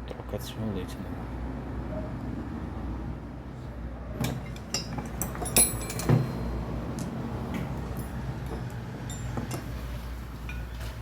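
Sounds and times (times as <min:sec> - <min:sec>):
metal tools clinking on workbench: 0:04.2 - 0:09.9.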